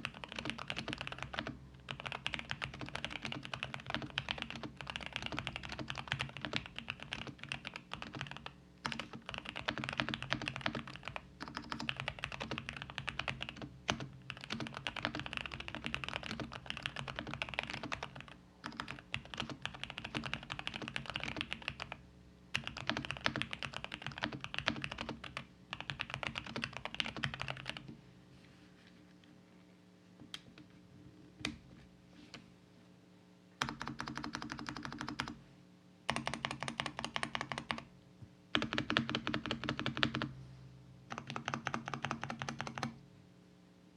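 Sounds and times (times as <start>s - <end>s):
mechanical keyboard typing: 0.0s - 27.9s, 33.6s - 35.4s, 36.1s - 37.8s, 38.5s - 40.3s, 41.1s - 43.0s.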